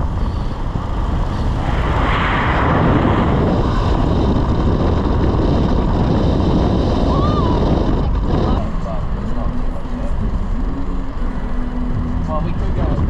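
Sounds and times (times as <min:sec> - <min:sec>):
wind noise: 0:00.0 - 0:10.4
road rumble: 0:00.0 - 0:13.0
vehicle engine: 0:00.0 - 0:13.0.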